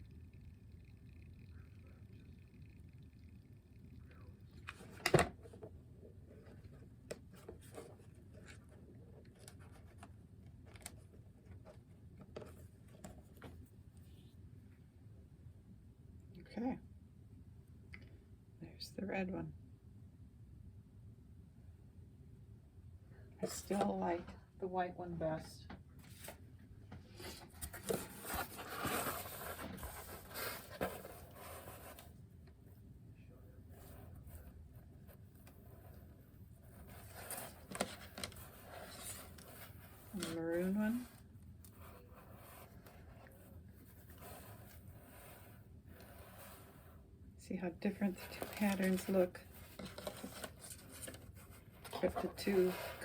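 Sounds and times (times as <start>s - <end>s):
low room hum: 0.0s - 53.0s
rustling and scraping of objects: 26.0s - 32.3s, 33.6s - 47.0s, 47.9s - 53.0s.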